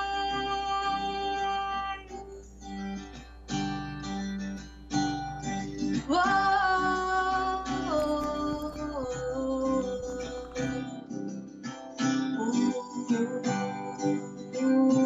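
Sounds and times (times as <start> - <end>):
acoustic guitar strummed: 0.0 - 15.0.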